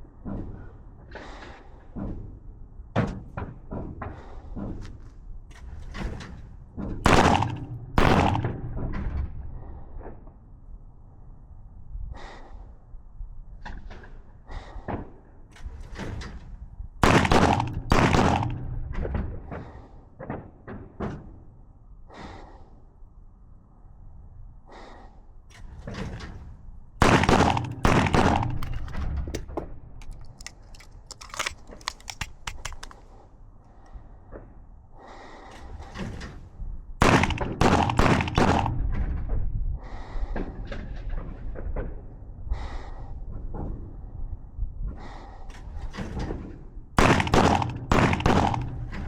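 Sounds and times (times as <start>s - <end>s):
pistol shots echoing indoors: 37.0s - 38.8s, 47.0s - 48.9s.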